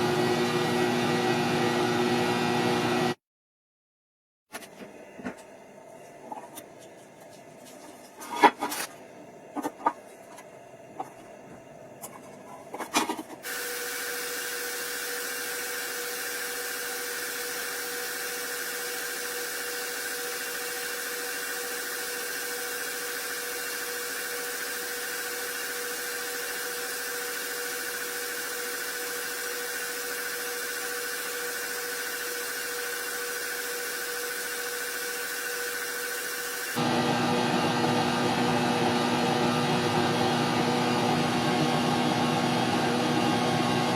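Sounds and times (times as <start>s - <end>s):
power tool running: 13.4s - 43.9s.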